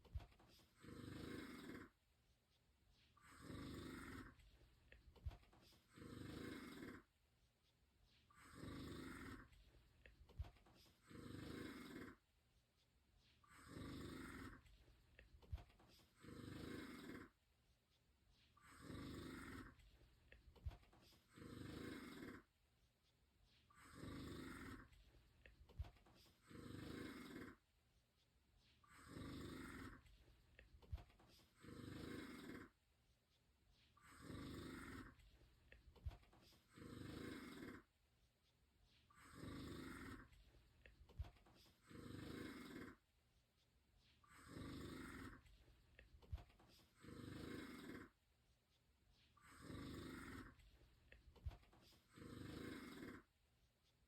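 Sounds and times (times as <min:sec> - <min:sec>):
quiet breathing: 0:00.0 - 0:54.0
person snoring: 0:00.8 - 0:02.0, 0:03.2 - 0:04.4, 0:05.8 - 0:07.1, 0:08.4 - 0:09.6, 0:10.9 - 0:12.2, 0:13.5 - 0:14.7, 0:16.1 - 0:17.4, 0:18.6 - 0:19.8, 0:21.1 - 0:22.5, 0:23.7 - 0:25.0, 0:26.2 - 0:27.6, 0:28.9 - 0:30.1, 0:31.4 - 0:32.8, 0:34.0 - 0:35.2, 0:36.5 - 0:37.9, 0:39.2 - 0:40.4, 0:41.6 - 0:43.0, 0:44.3 - 0:45.5, 0:46.8 - 0:48.2, 0:49.4 - 0:50.6, 0:51.8 - 0:53.3.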